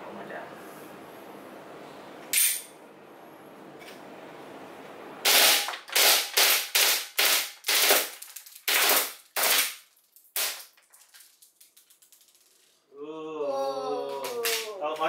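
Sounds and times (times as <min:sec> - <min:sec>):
airsoft pistol shots: 0:05.2 - 0:08.1.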